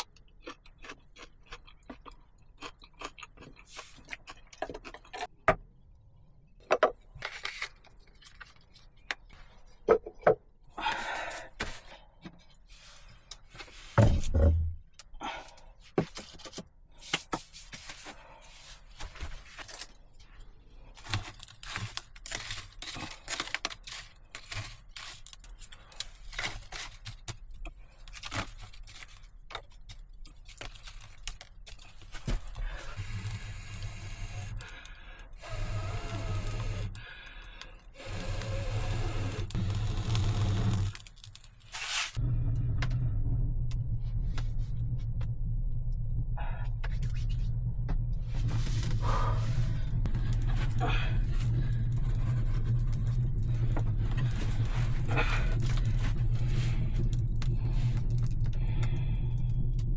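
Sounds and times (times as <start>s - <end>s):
clicks scrapes and crackles: 7.1s - 9.6s, 15.9s - 42.2s, 50.0s - 58.6s
heavy thump: 14.0s - 14.9s, 42.2s - 51.3s
steady low hum: 32.3s - 59.9s.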